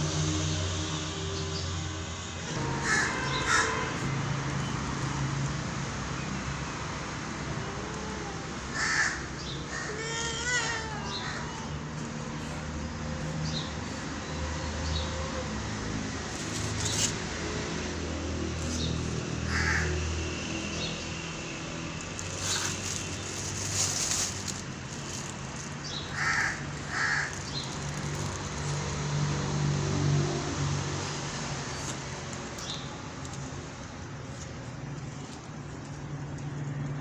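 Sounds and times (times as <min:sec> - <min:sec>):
crows cawing: 0:02.8 - 0:03.9, 0:08.7 - 0:11.8, 0:19.4 - 0:20.1, 0:26.1 - 0:27.7.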